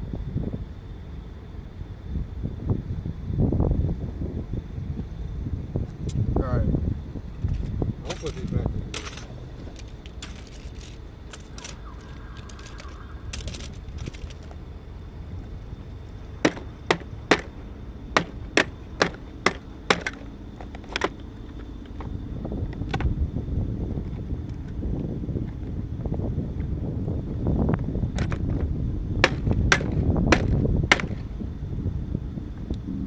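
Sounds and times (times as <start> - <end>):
hammer striking scrap metal: 16.4 - 17.6, 18.2 - 20.2, 29.2 - 31.2.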